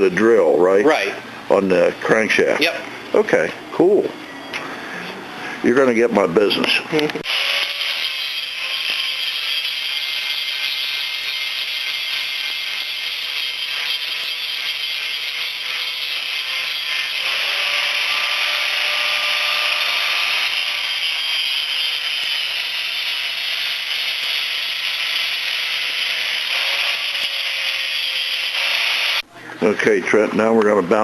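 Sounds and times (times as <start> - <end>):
power grinder grinding metal: 6.5 - 29.2.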